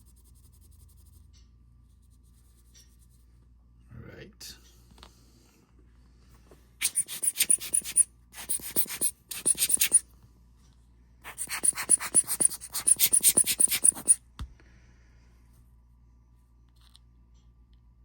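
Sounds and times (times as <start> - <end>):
rapid scrubbing strokes: 6.8 - 10.0, 11.3 - 14.2.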